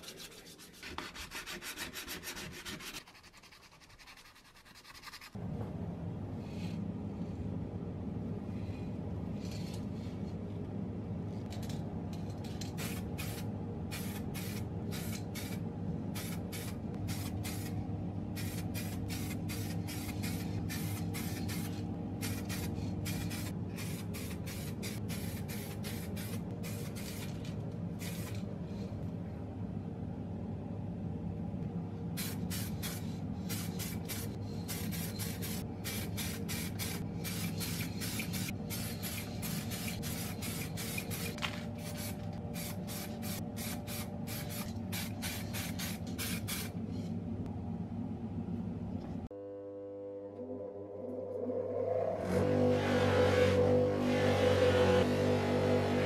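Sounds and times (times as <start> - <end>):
low hum: 5.4 - 46.0, 46.7 - 56.0
spray can hissing: 12.8 - 15.6, 16.2 - 17.8, 18.4 - 27.4, 32.2 - 46.8.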